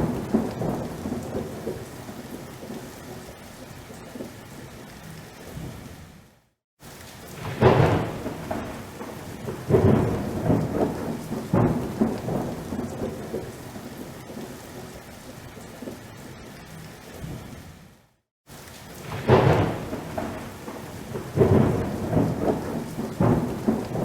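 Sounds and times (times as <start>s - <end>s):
thunder cracking and rumbling: 0.0s - 3.3s, 7.3s - 16.0s, 19.0s - 24.0s
steady rain: 0.0s - 24.0s.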